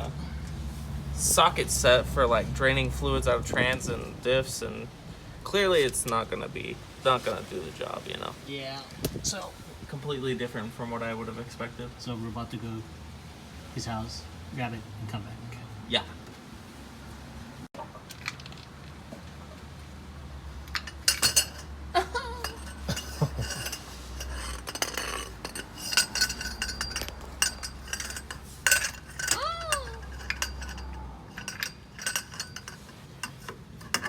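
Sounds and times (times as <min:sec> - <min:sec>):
metal tools clinking: 0:20.6 - 0:21.8, 0:22.4 - 0:34.0.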